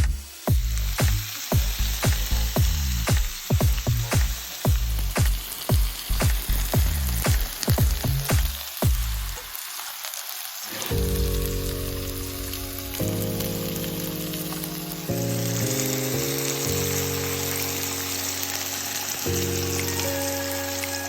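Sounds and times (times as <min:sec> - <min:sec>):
food sizzling on a grill: 0:00.0 - 0:21.0
background music of held chords: 0:10.9 - 0:21.0.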